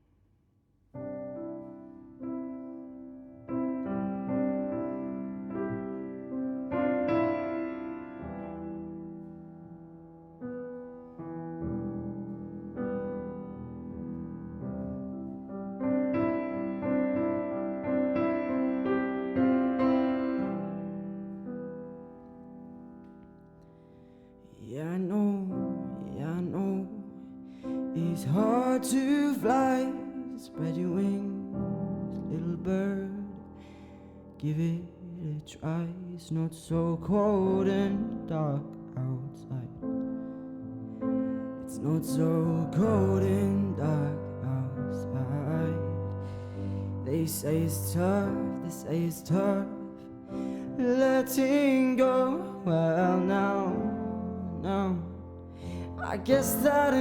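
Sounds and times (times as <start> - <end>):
gentle solo piano: 0.9 - 57.0
person singing: 24.6 - 31.6, 41.6 - 57.0.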